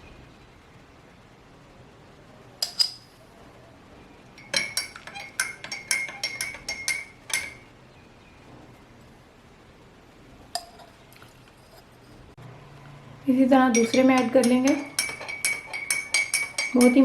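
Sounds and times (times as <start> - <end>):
metal spoon clinking in cup: 2.6 - 3.0, 4.4 - 7.6, 13.7 - 17.0.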